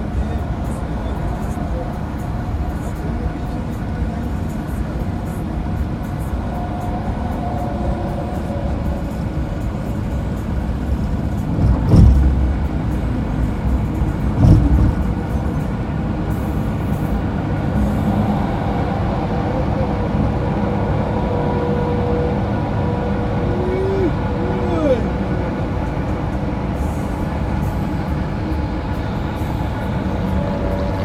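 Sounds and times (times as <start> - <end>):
tyres and engine rumbling: 0.0 - 31.0
short loud thumps: 11.5 - 12.8, 14.3 - 15.2.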